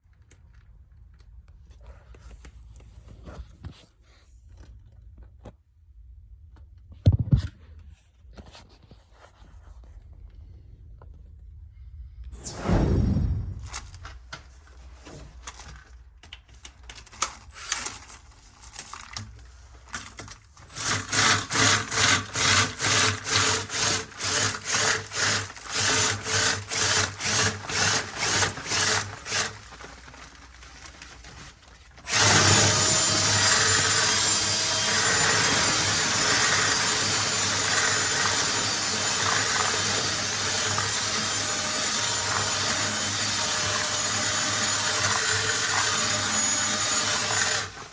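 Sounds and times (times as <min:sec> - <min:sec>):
power tool motor running: 0:20.7 - 0:29.7, 0:32.0 - 0:47.9.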